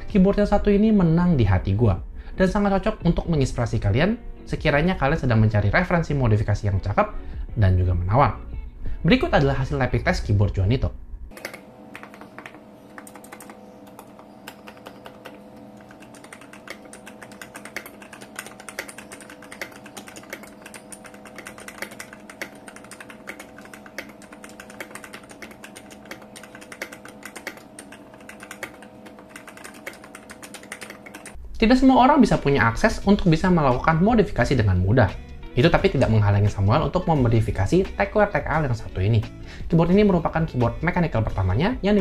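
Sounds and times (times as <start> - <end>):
fast mechanical keyboard typing: 11.3 - 31.4.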